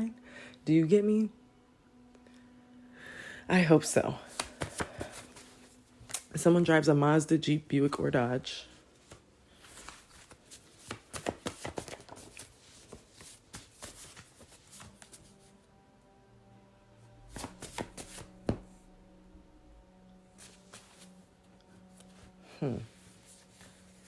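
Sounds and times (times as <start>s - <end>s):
cards being shuffled: 4.3s - 6.3s, 9.0s - 15.5s, 17.3s - 18.8s, 20.4s - 21.2s, 21.8s - 24.0s.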